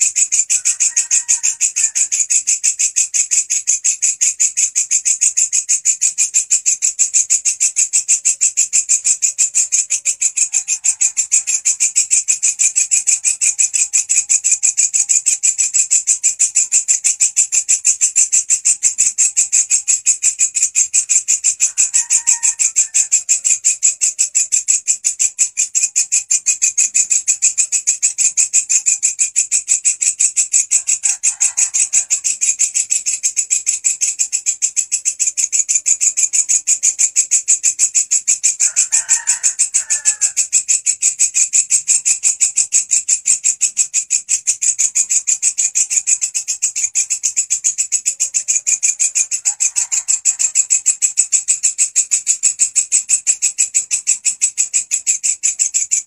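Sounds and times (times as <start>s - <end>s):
katydid pulsing chirr: 0.0s - 56.0s.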